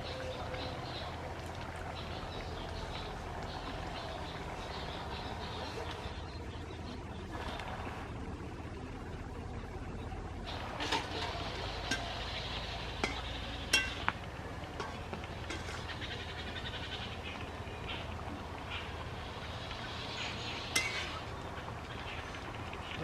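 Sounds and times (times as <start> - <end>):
steady low hum: 0.0 - 23.0
metal dishware clinking: 11.9 - 12.2, 13.0 - 14.1, 14.8 - 15.9, 20.8 - 21.1.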